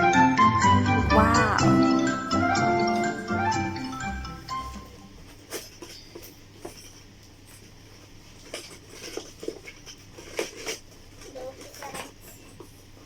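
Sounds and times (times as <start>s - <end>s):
cardboard and plastic packaging rustling: 5.2s - 13.0s.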